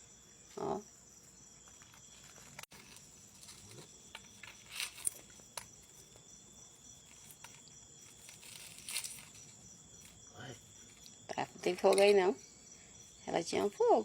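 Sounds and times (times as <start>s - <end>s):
insects chirping: 0.0s - 14.0s
soft crackles or rustles: 1.2s - 12.2s.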